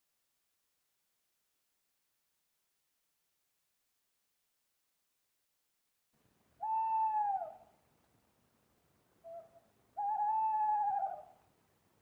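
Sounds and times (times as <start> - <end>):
owl hooting: 6.6 - 7.7, 9.2 - 11.4.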